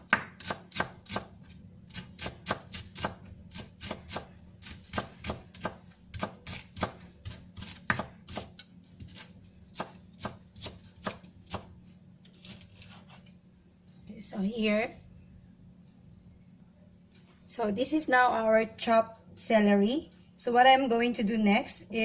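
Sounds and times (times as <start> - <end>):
knife chopping celery: 0.0 - 11.7, 12.3 - 13.3.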